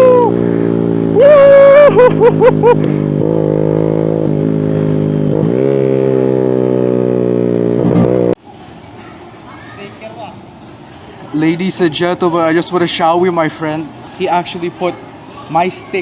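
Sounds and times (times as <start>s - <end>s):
motorcycle engine revving: 0.0s - 8.4s.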